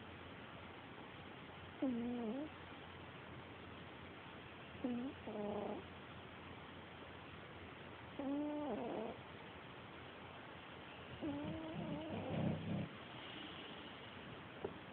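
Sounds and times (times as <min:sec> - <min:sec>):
cat snoring: 0:01.8 - 0:02.5, 0:04.8 - 0:05.8, 0:08.2 - 0:09.2, 0:11.2 - 0:13.8.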